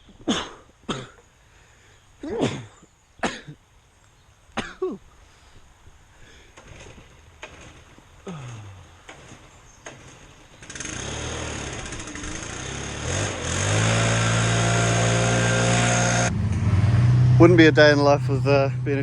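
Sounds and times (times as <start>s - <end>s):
engine running and revving: 9.1s - 19.0s.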